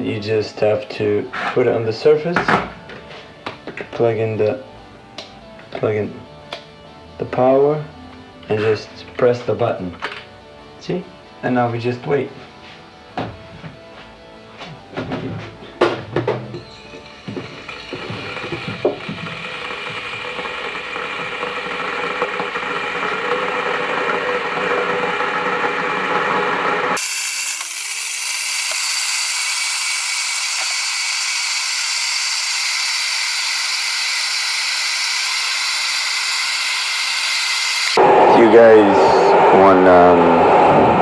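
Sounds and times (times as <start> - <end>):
electric kettle hissing: 16.9 - 23.8, 26.7 - 38.0.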